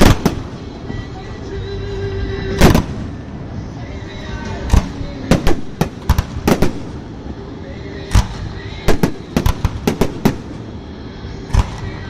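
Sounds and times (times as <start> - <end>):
fireworks bangs: 0.0 - 1.1, 2.5 - 3.3, 4.6 - 7.3, 8.1 - 10.8, 11.4 - 12.0.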